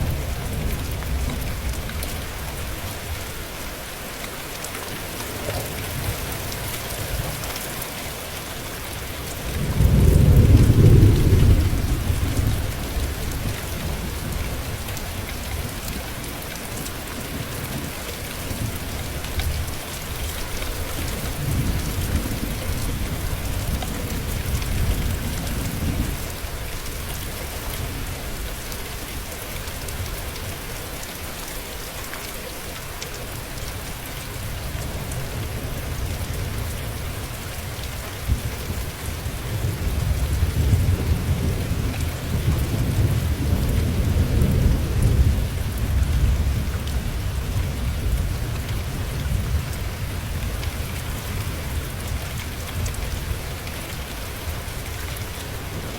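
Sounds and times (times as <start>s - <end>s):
rain falling: 0.0s - 55.9s
thunder rolling: 9.6s - 14.2s.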